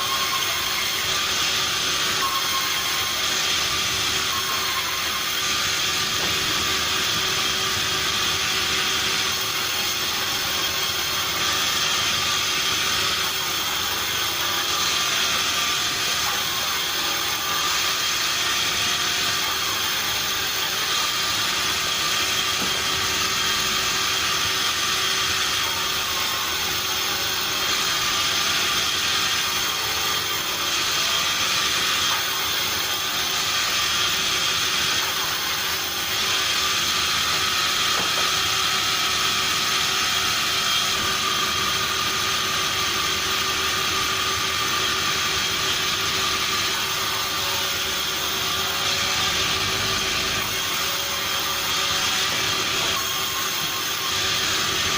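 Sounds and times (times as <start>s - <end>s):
sawmill machinery running: 0.0s - 54.9s.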